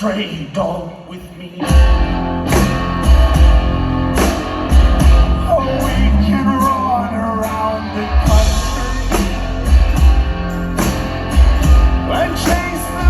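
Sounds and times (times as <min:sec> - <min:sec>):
live band music: 0:01.6 - 0:13.0
person singing: 0:04.7 - 0:10.3, 0:11.4 - 0:13.0.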